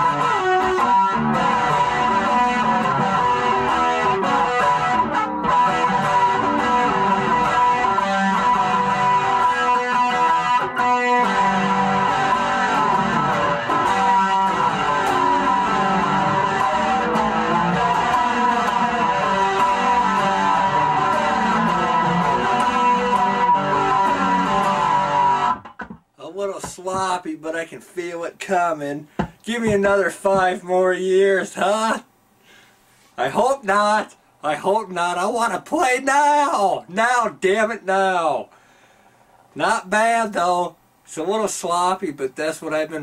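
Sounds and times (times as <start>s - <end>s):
guitar riff: 0.0s - 27.2s.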